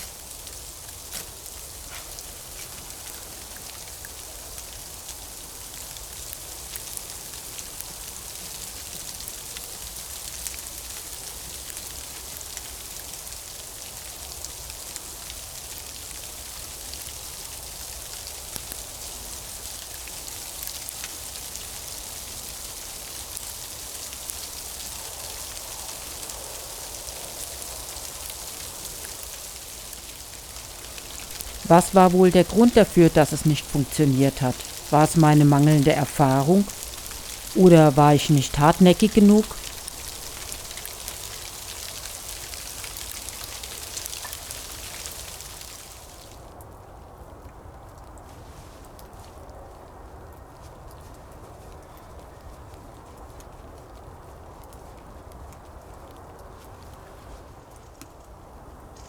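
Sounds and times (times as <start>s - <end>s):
steady rain falling: 0.0s - 46.4s.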